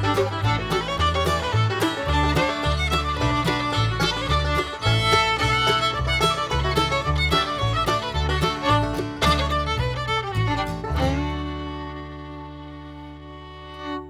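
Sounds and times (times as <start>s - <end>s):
bass line: 0.0s - 14.0s
fiddle tune: 0.0s - 14.0s.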